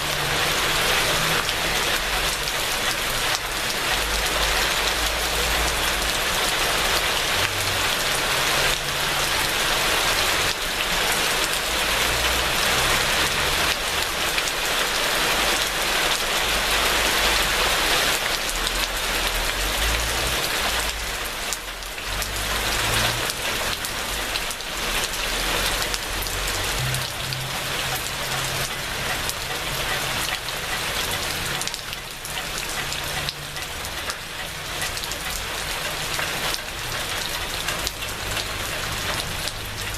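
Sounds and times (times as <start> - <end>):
rain falling steadily: 0.0 - 39.9.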